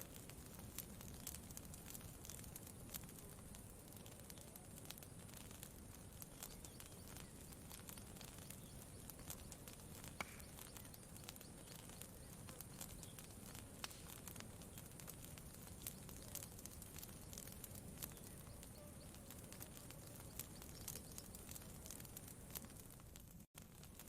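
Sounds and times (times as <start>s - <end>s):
campfire crackling: 0.0s - 24.0s
fire pops: 0.0s - 24.0s.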